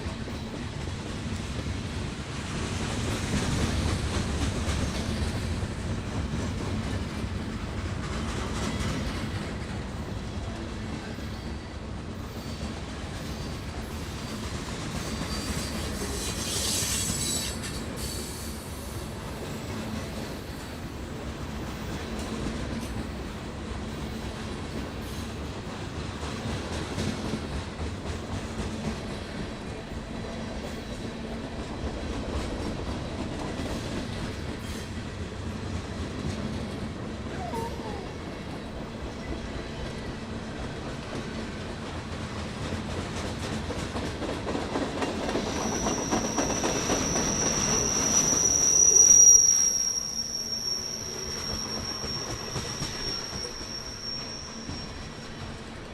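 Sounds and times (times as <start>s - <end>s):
train rumbling on rails: 0.0s - 55.9s
high wheel squeal: 15.0s - 18.7s, 45.4s - 55.6s.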